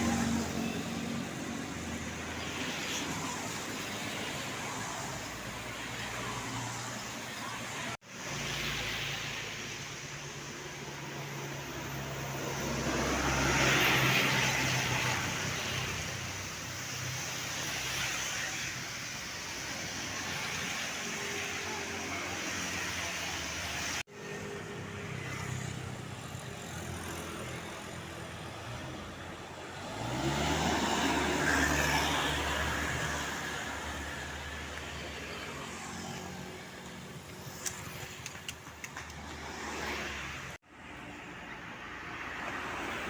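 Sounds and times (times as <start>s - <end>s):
engine speeding up: 29.7s - 40.6s
vehicle passing: 29.8s - 40.6s.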